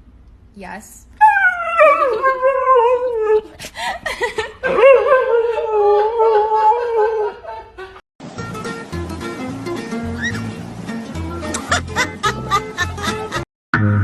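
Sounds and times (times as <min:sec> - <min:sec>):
dog howling: 0:01.2 - 0:03.4.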